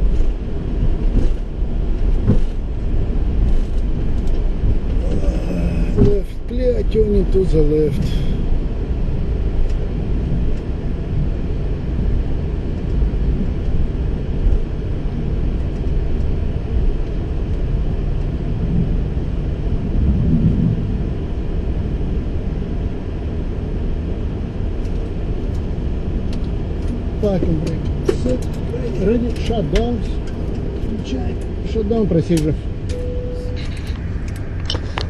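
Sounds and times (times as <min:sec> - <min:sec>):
jet engines idling: 0:20.8 - 0:35.0.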